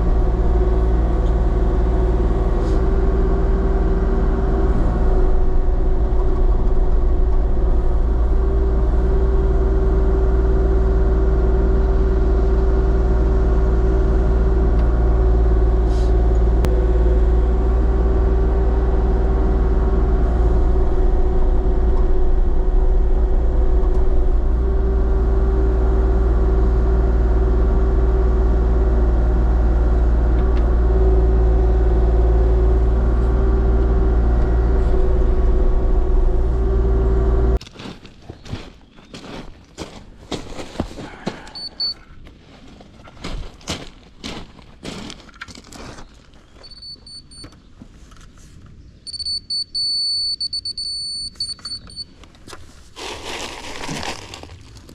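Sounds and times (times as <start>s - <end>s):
constant engine whine: 0.0s - 37.6s, 45.2s - 54.9s
diesel engine droning: 0.0s - 37.6s.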